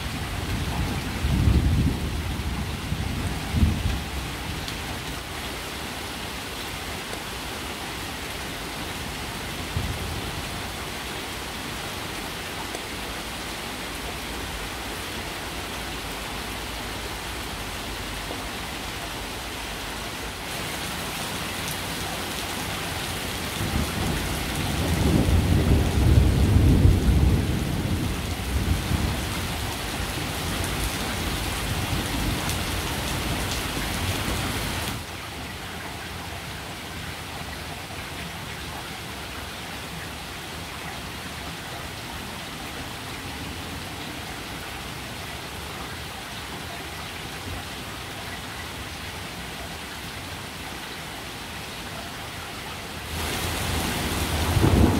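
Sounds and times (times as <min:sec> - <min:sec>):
steady rain hiss: 0:00.0 - 0:54.9
rolling thunder rumble: 0:00.4 - 0:04.2, 0:23.6 - 0:29.4, 0:53.2 - 0:54.9.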